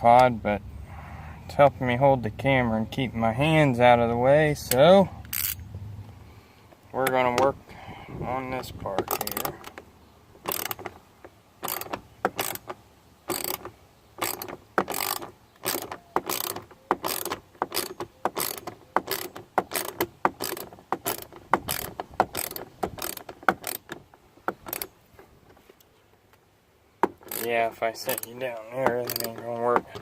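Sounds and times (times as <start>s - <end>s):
hand ratchet clicking: 4.7s - 5.6s, 9.0s - 9.8s, 10.4s - 10.9s, 11.6s - 24.9s, 27.0s - 30.0s.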